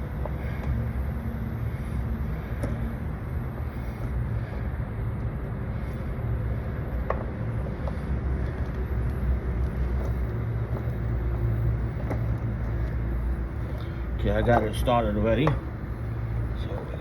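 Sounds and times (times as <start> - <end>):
low mechanical hum: 0.0 - 17.0.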